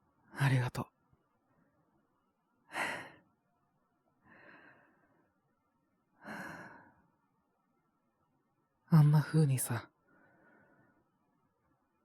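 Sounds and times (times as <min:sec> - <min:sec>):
man breathing: 0:04.3 - 0:05.3.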